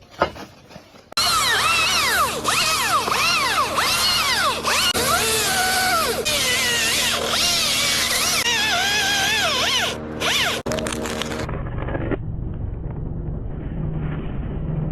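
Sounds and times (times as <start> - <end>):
chainsaw running at high revs: 1.2 - 10.7
low steady engine rumble: 1.2 - 14.9.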